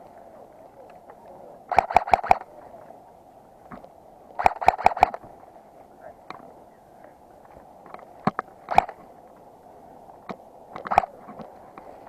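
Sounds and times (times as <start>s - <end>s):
airsoft gun shots: 1.7s - 2.5s, 4.4s - 5.2s, 8.7s - 9.0s.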